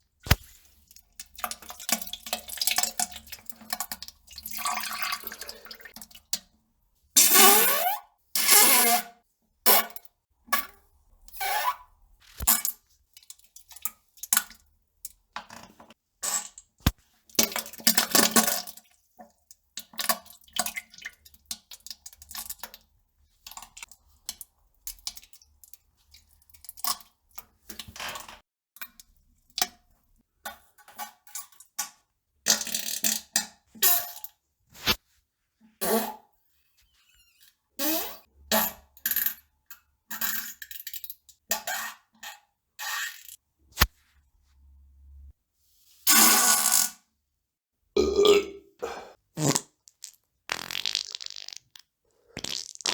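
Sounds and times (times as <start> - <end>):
fart sounds: 49.4 - 52.9.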